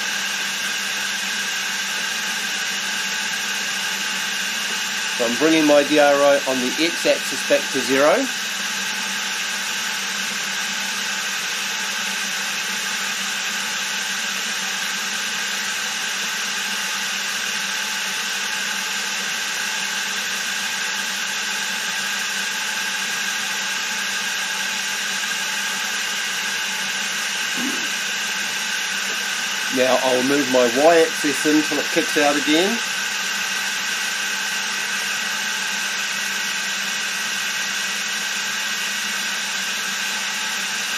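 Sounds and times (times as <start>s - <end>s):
milling machine motor humming: 0.0s - 11.9s, 24.2s - 40.9s.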